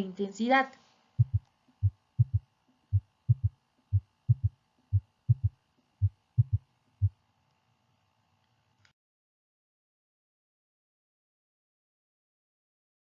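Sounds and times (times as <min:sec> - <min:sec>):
faint steady hum: 0:00.0 - 0:08.9
galloping heartbeat thumps: 0:01.2 - 0:07.2.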